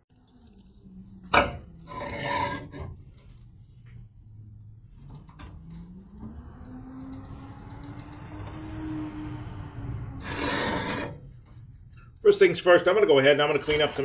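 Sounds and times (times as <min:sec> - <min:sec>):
wood scraping on wood: 0:01.4 - 0:04.0, 0:10.2 - 0:14.0.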